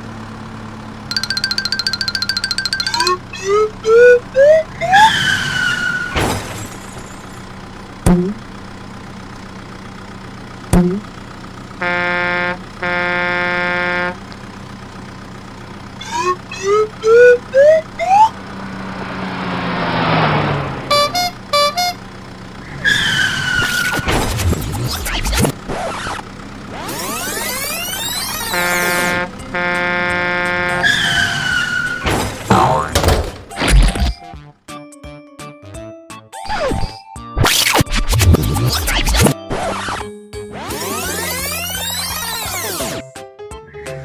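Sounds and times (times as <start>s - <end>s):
fast beeps: 1.1s - 4.6s
rising whistle-like chirps: 1.1s - 6.0s
vehicle horn honking: 11.7s - 14.3s, 16.0s - 22.3s, 27.0s - 32.0s.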